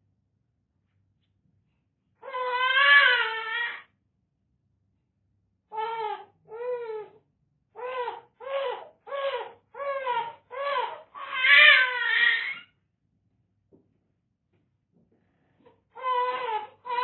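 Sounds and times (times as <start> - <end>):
infant crying: 2.2 - 3.9, 5.7 - 7.2, 7.8 - 12.7, 15.9 - 17.0.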